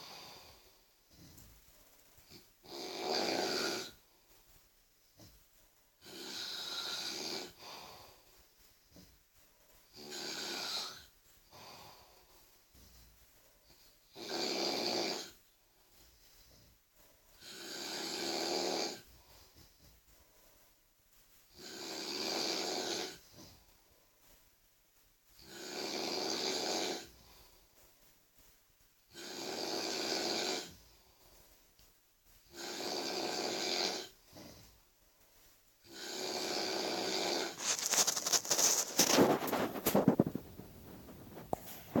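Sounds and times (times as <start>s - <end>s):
quiet breathing: 0.0s - 2.6s, 3.2s - 14.2s, 15.3s - 24.6s, 25.3s - 42.0s
person snoring loudly: 2.6s - 4.0s, 14.2s - 15.4s, 17.4s - 19.0s, 25.4s - 27.1s, 29.1s - 30.8s, 32.5s - 34.2s, 35.8s - 40.4s.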